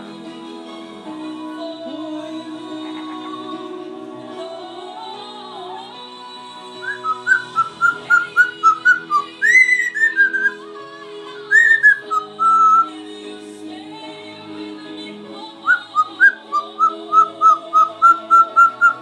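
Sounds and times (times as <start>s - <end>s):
music from television: 0.0s - 19.0s
parrot whistling: 6.8s - 13.0s, 15.6s - 19.0s.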